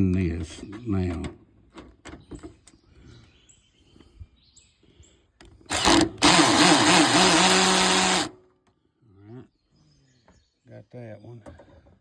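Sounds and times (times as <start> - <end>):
power drill driving a screw: 5.7 - 8.3.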